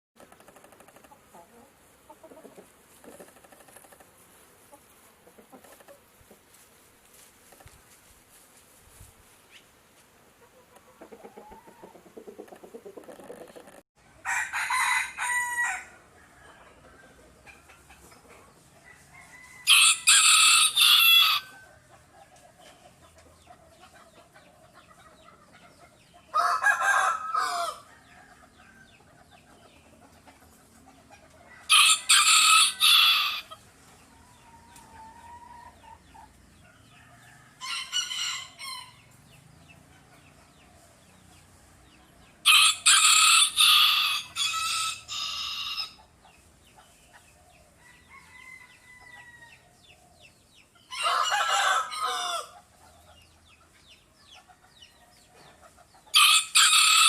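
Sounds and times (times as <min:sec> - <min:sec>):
rooster crowing: 0:14.2 - 0:17.1, 0:18.8 - 0:21.7, 0:26.3 - 0:28.8, 0:31.5 - 0:33.6, 0:37.0 - 0:39.0, 0:42.4 - 0:46.0, 0:47.8 - 0:49.7, 0:50.9 - 0:52.6, 0:56.1 - 0:57.0.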